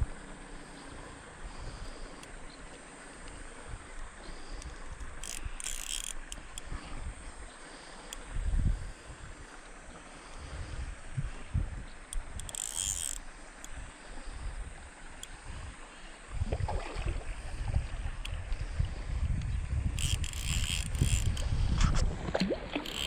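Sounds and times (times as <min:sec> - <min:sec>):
wind buffeting microphone: 0:08.2 - 0:09.5, 0:10.4 - 0:12.5, 0:13.8 - 0:23.0.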